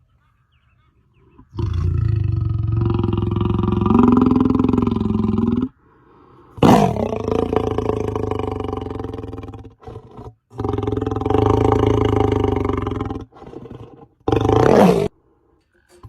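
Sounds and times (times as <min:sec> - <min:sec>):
lion roaring: 0:01.6 - 0:05.7, 0:06.6 - 0:15.1.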